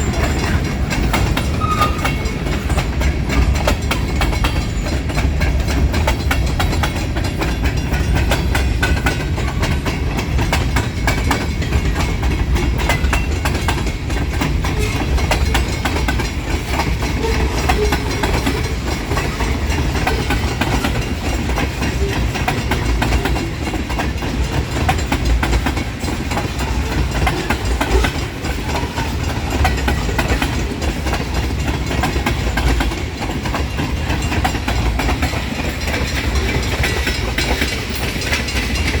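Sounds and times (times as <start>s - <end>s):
freight train rumbling past: 0.0s - 39.0s
wheels clacking over rail joints: 0.0s - 39.0s.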